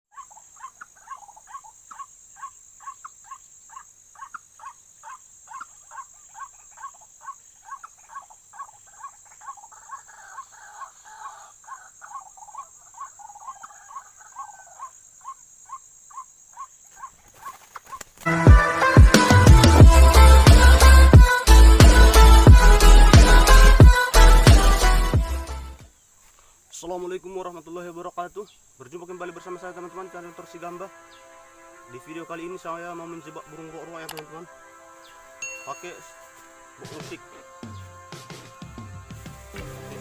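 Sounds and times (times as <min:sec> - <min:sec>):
waterhen calling: 0:00.1 - 0:18.3
insect drone: 0:00.1 - 0:40.0.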